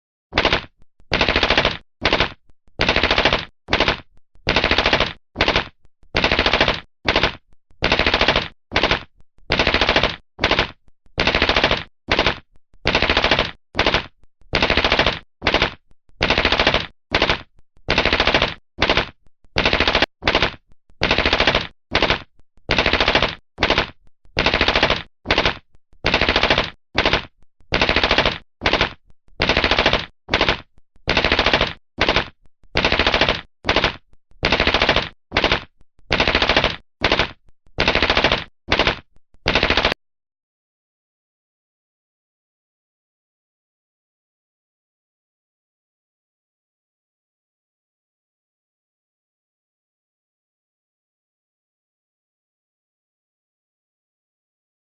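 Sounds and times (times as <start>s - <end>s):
submachine gun firing bursts: 0.4s - 40.0s.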